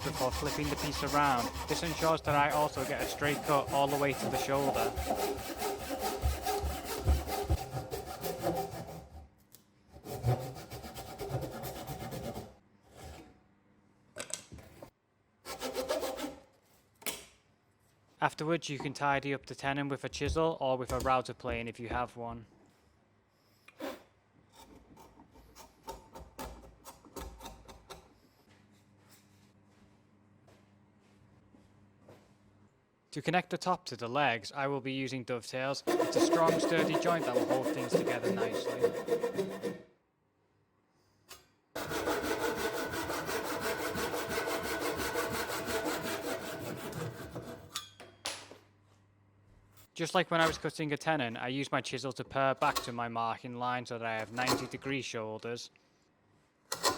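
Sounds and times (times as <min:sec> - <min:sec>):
blade shaving wood: 0:00.0 - 0:09.0, 0:35.9 - 0:39.8, 0:41.8 - 0:47.7
hand saw cutting wood: 0:00.0 - 0:09.3, 0:09.9 - 0:13.2, 0:15.5 - 0:16.4, 0:35.9 - 0:39.9, 0:41.8 - 0:47.8.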